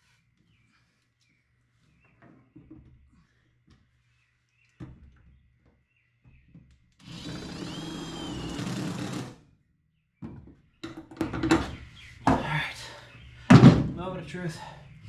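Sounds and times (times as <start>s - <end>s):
cordless drill driving a screw: 7.0s - 9.4s.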